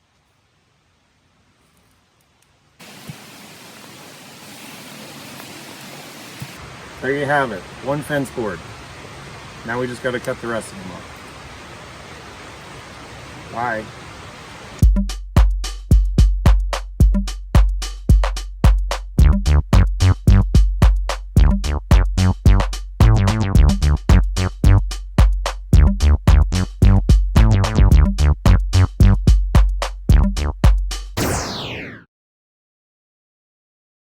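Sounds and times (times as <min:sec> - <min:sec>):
electronic music with drum-machine beat: 0:14.8 - 0:32.0
falling sweep: 0:31.2 - 0:32.1.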